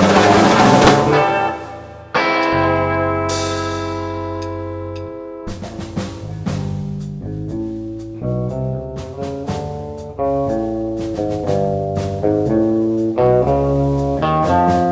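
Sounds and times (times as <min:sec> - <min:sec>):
held guitar chord ringing: 0:00.0 - 0:05.4
band playing: 0:00.0 - 0:08.2
bass line with drum hits: 0:00.0 - 0:14.9.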